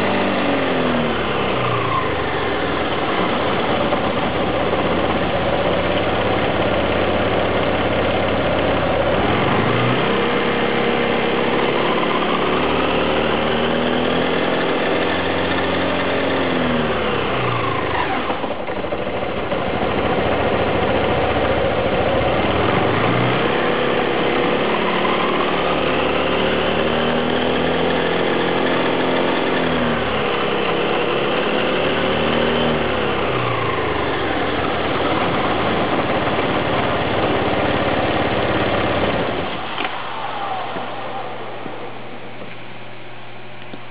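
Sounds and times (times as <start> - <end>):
scooter engine revving: 0.0 - 42.6
gear case abnormal noise: 33.3 - 43.9.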